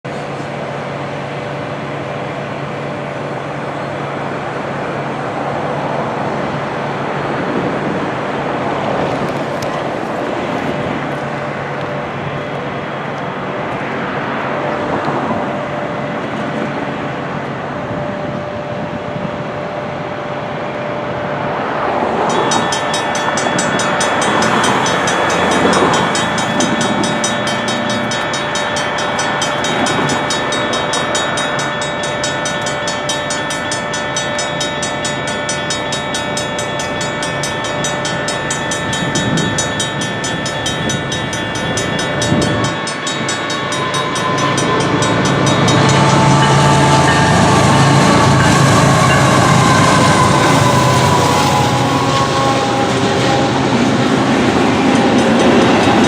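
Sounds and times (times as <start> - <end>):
train rumbling on rails: 0.0 - 56.0
crossing signal bells ringing: 6.5 - 56.0
rapid high ringing: 22.1 - 56.0.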